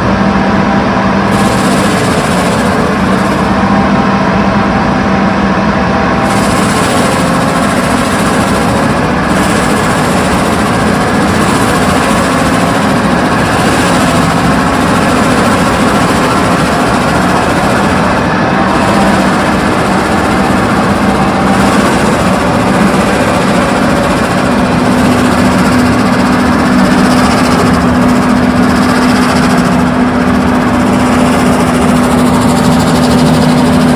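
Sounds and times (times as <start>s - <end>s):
excavator running: 0.0s - 33.9s
hydraulic mulcher hiss: 6.2s - 33.9s.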